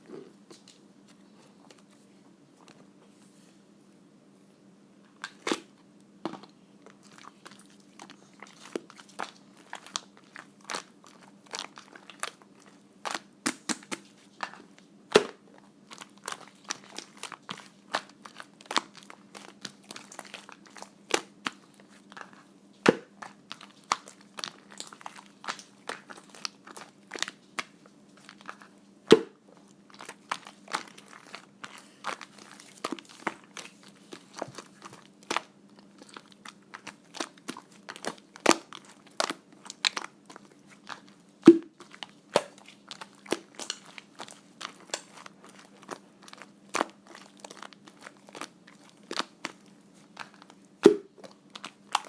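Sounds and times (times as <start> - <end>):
slime clicking and popping: 34.5 - 52.0.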